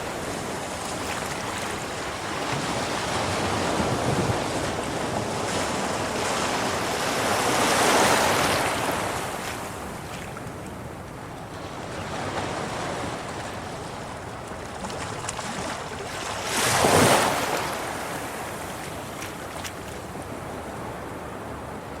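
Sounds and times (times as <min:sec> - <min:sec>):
sea waves washing against rocks: 0:00.0 - 0:10.6, 0:11.9 - 0:20.4.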